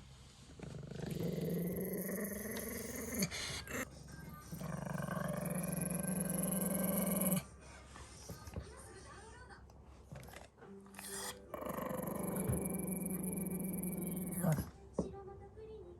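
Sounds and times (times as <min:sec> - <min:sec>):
dog growling: 0:00.6 - 0:07.5, 0:11.0 - 0:14.7.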